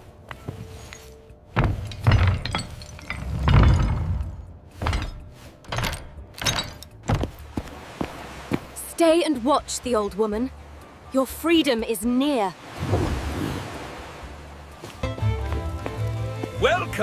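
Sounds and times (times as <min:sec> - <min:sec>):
background music: 0:00.0 - 0:17.0
heavy thuds and crashes: 0:01.6 - 0:07.6.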